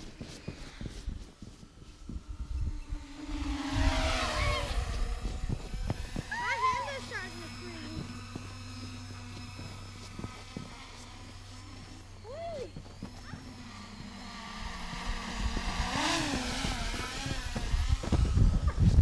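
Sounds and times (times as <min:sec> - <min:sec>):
wind rumble on microphone: 0:00.0 - 0:06.4, 0:14.8 - 0:19.0
electric drone motors whining: 0:00.0 - 0:19.0.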